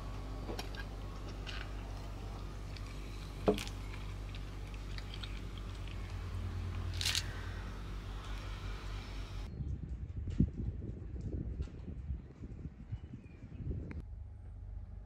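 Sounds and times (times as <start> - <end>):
car cabin hum: 0.0 - 9.5.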